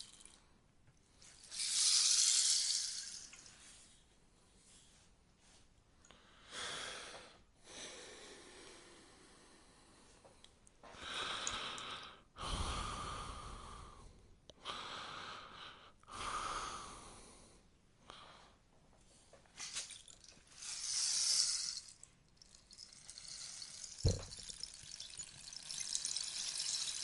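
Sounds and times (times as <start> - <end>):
rainstick cascading: 1.4 - 3.6, 19.6 - 27.0.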